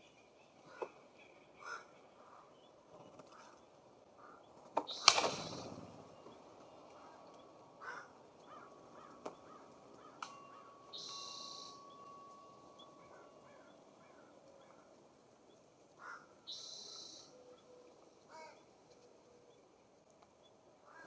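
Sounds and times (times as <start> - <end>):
birds chirping softly: 0.0 - 21.0
sharp clicks: 4.8 - 5.6
loud harsh bird call: 7.8 - 12.0, 16.0 - 17.4.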